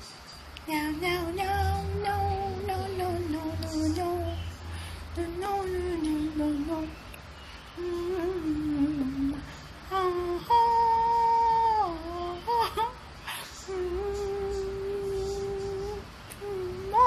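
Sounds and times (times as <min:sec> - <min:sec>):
person humming melody: 0:00.7 - 0:04.5, 0:07.8 - 0:13.0, 0:13.6 - 0:17.0.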